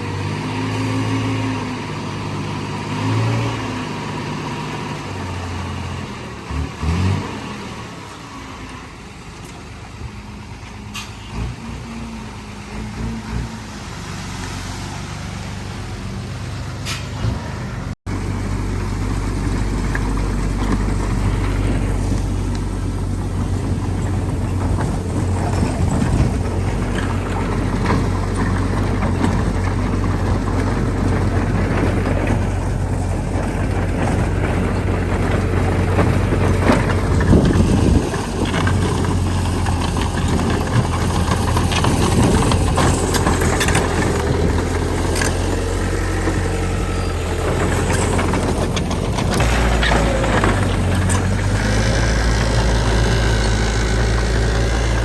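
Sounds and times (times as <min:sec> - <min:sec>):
diesel engine running: 0:00.0 - 0:55.0
knocks and rattles: 0:18.9 - 0:55.0.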